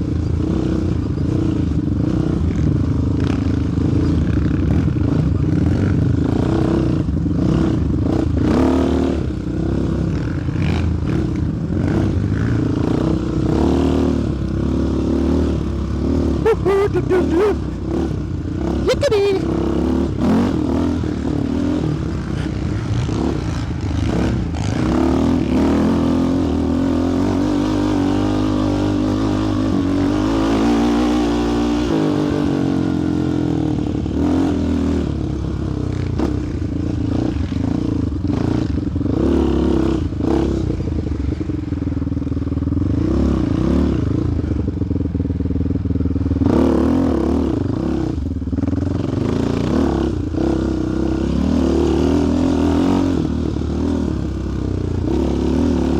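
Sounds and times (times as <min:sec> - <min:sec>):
quad engine revving: 0:11.9 - 0:33.6, 0:49.1 - 0:55.9.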